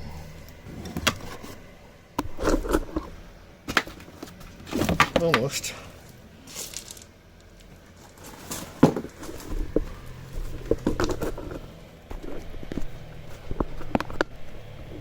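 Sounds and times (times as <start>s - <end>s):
clicks scrapes and knocks: 8.0s - 14.4s.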